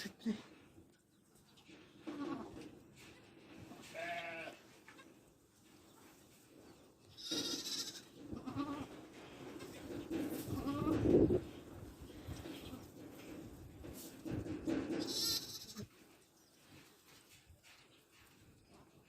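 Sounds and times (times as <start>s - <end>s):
goats bleating: 3.8s - 5.1s, 7.2s - 8.9s, 15.0s - 15.9s.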